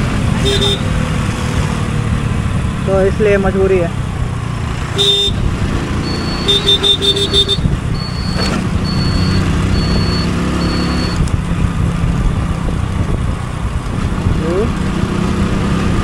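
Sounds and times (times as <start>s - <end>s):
motorcycle engine and road rumble: 0.0s - 16.0s
short horn beeps: 5.0s - 5.4s, 6.0s - 11.2s
high electronic beep: 6.0s - 11.2s.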